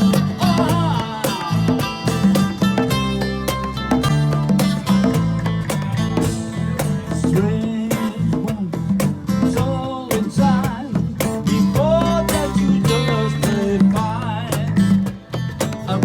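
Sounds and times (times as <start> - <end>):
person singing: 0.0 - 2.2, 11.7 - 14.8
acoustic guitar strumming: 0.0 - 16.0.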